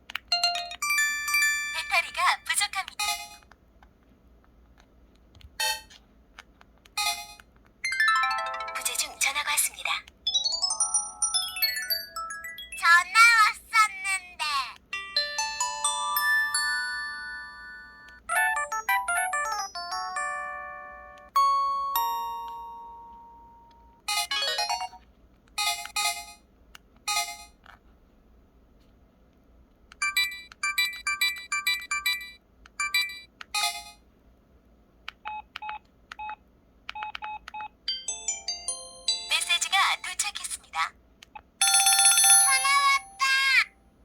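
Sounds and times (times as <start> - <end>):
phone notification tones: 0.4 - 2.4, 7.0 - 9.5, 15.0 - 25.0.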